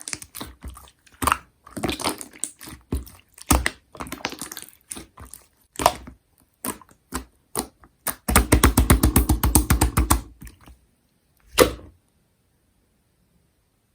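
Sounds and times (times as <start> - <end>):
slime squelch: 0.0 - 10.8, 11.4 - 12.0
slime wet clicking pops: 0.1 - 10.6.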